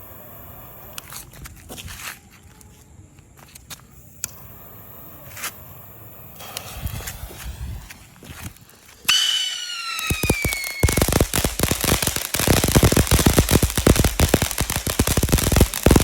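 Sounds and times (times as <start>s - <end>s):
firework crackling and popping: 3.5s - 16.0s
firework falling whistle: 9.0s - 16.0s.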